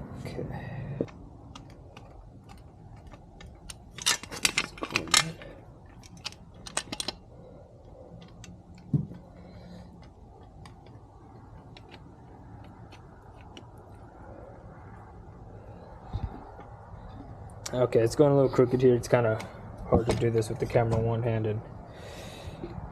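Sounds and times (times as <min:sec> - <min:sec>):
metal bolts clinking and rattling: 0:01.5 - 0:07.6.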